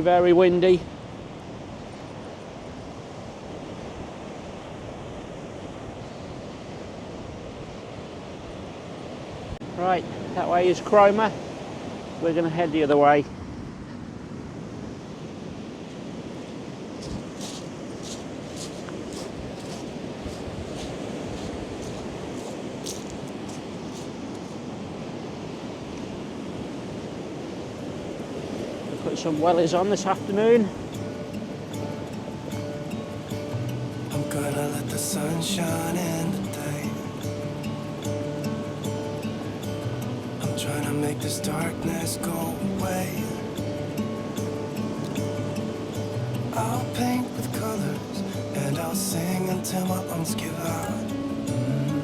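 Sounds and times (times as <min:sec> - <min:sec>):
wind rushing over microphone: 0:00.0 - 0:34.6
choppy sea surf: 0:00.0 - 0:52.0.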